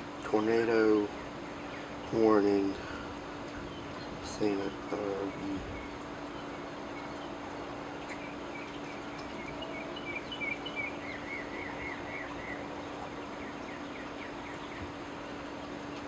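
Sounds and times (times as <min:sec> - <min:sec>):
faint low hum: 0:00.0 - 0:16.0
outdoor background noise: 0:00.0 - 0:16.0
bird chirping: 0:03.5 - 0:15.8.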